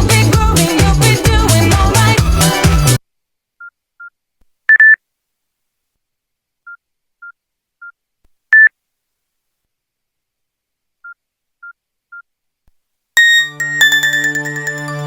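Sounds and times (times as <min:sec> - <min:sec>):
electronic ringtone beeps: 0:13.2 - 0:15.0.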